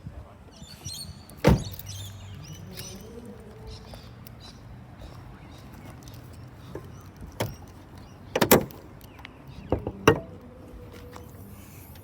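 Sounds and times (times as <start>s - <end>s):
car bonnet latch clunks and clicks: 1.3s - 2.0s, 5.6s - 11.3s.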